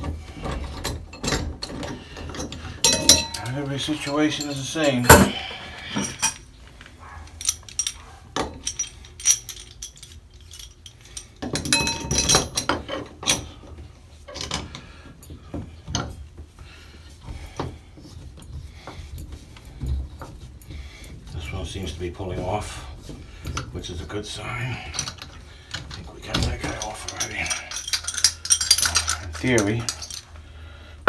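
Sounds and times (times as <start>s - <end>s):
metal tool clinking: 0.7s - 6.5s, 7.1s - 13.6s, 24.0s - 30.4s.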